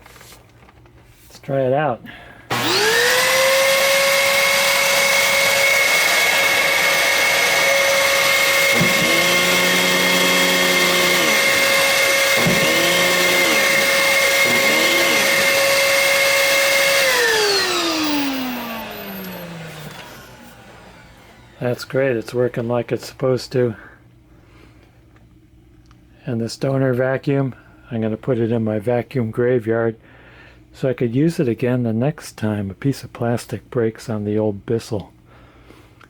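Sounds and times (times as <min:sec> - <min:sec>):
vacuum cleaner motor whining: 0:02.5 - 0:22.4.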